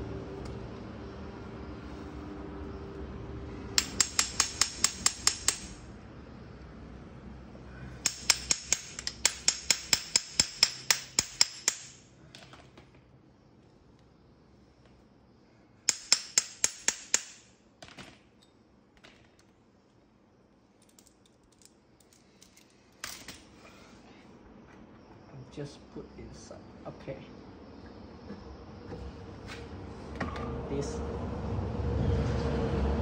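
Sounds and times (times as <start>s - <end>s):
metallic clicking of hand tool: 3.8s - 5.9s, 8.0s - 12.0s, 15.9s - 17.5s.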